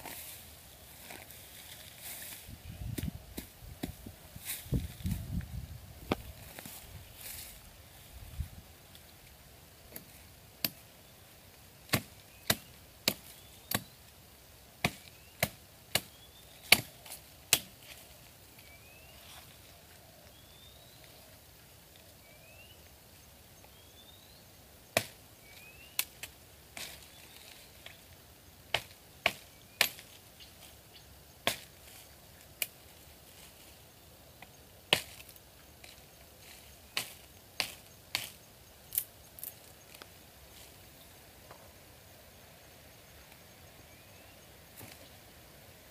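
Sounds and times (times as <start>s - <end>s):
blade chopping wood: 11.9s - 13.9s.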